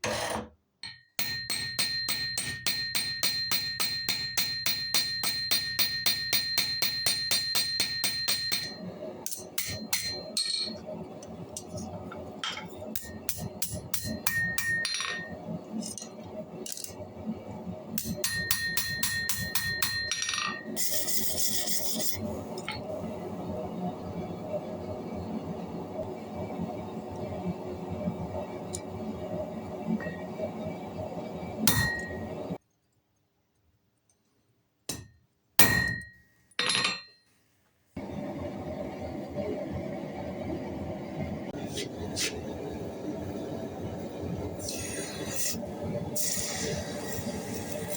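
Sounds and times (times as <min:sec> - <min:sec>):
hammer striking steel on anvil: 0:00.8 - 0:10.8, 0:12.5 - 0:15.4, 0:18.0 - 0:20.6, 0:31.7 - 0:32.4, 0:34.9 - 0:37.2.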